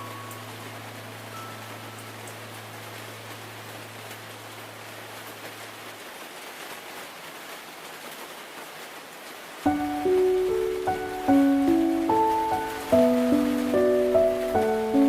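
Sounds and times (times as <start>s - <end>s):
piano notes: 0.0s - 4.3s, 9.6s - 15.0s
rain on leaves: 0.0s - 15.0s.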